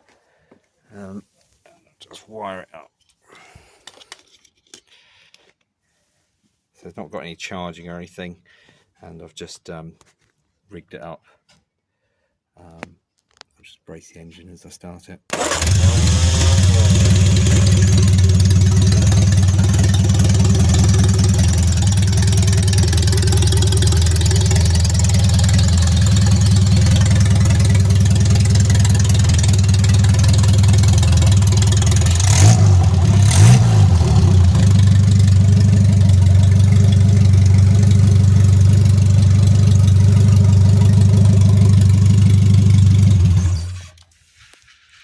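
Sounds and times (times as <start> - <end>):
car engine running and revving: 15.6 - 43.8.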